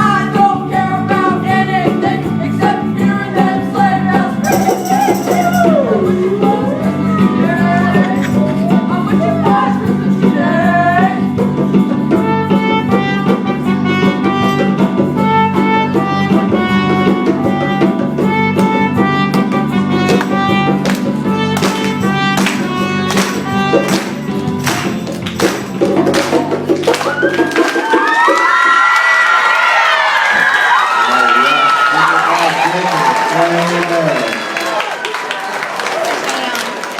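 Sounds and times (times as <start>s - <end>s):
person singing: 0.0s - 11.5s
sharp percussive hits: 4.4s - 5.7s, 20.0s - 28.5s.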